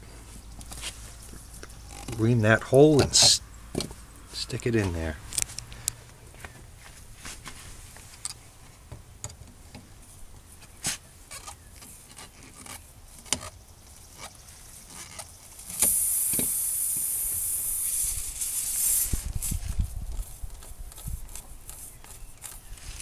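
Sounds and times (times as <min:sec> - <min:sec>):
tire plug reamer clicks and scrapes: 0:00.6 - 0:04.0, 0:04.7 - 0:06.0, 0:07.4 - 0:08.4, 0:10.6 - 0:23.0
air hissing out of tire: 0:15.7 - 0:19.8.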